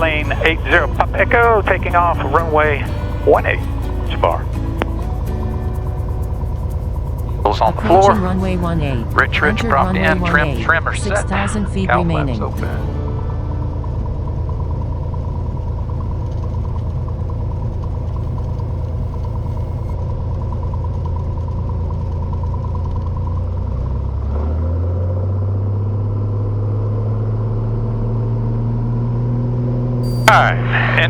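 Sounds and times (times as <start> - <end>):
propeller plane engine drone: 0.0 - 31.0.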